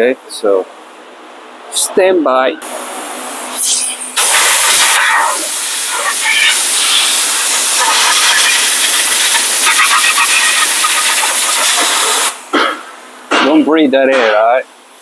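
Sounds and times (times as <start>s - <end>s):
compressed air blow gun hissing: 3.4s - 12.5s.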